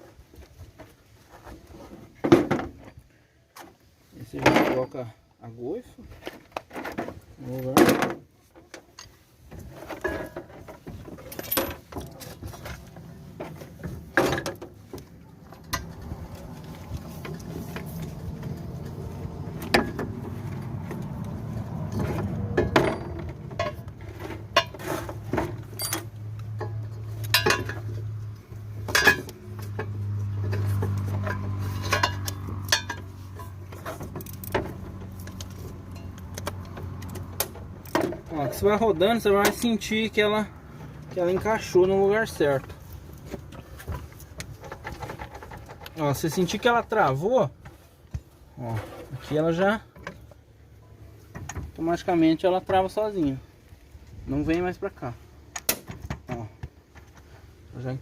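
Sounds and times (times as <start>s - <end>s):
metallic clinks and knocks: 10.0s - 12.7s, 21.2s - 38.3s.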